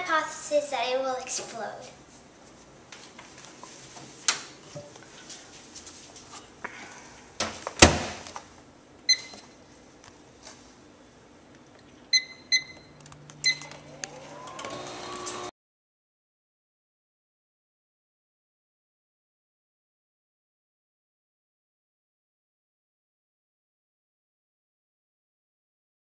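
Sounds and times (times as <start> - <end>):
keypad beeps: 9.1 - 9.4, 12.1 - 13.7
microwave oven humming: 12.0 - 15.5.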